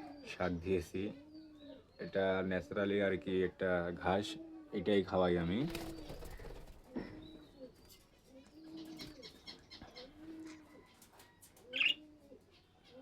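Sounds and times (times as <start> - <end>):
dove cooing: 0.0 - 2.0, 4.2 - 4.8, 5.8 - 13.0
budgerigars chirping: 11.7 - 12.0.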